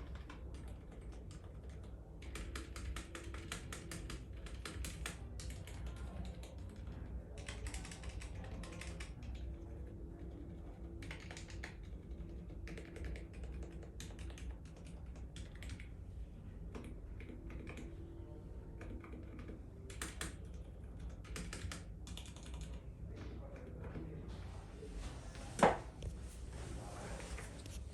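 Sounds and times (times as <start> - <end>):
mechanical keyboard typing: 0.0 - 16.0, 16.7 - 18.0, 18.8 - 22.9.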